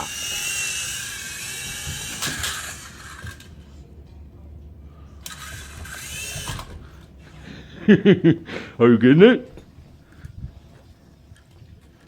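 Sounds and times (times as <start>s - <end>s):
toy helicopter motors whining: 0.0s - 3.6s, 5.2s - 7.1s.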